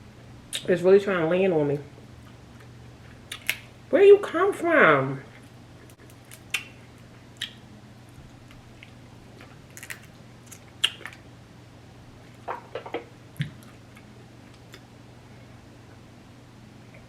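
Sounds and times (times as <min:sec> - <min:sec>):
wet chewing sounds: 0:02.2 - 0:03.7, 0:05.4 - 0:11.2.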